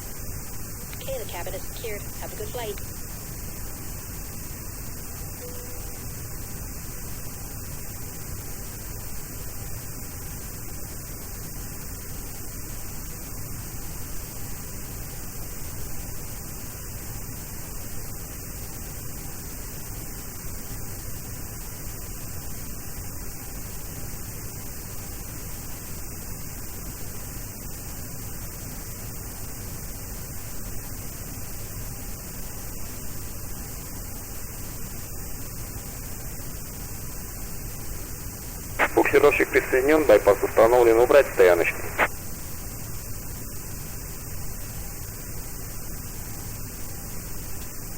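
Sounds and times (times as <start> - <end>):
static hiss: 0.0 - 16.9, 23.6 - 42.1
low hum: 38.8 - 42.1.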